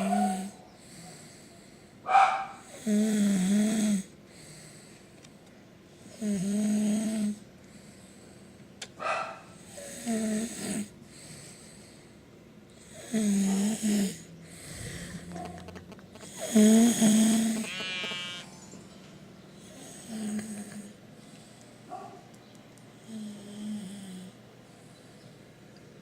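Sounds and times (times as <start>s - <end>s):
quiet breathing: 0.5s - 2.0s, 4.0s - 6.2s, 7.0s - 8.8s, 9.6s - 15.4s, 19.5s - 22.0s, 22.9s - 25.5s
person snoring loudly: 2.7s - 4.1s, 12.9s - 15.3s, 16.2s - 18.4s.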